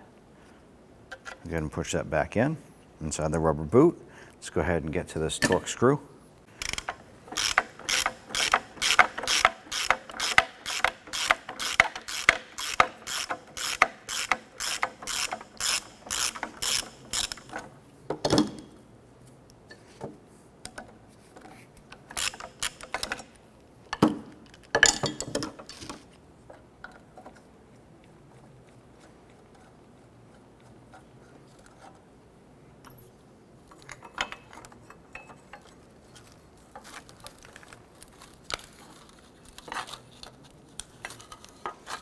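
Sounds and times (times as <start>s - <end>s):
hand ratchet clicking: 6.6s - 17.5s, 22.0s - 23.4s.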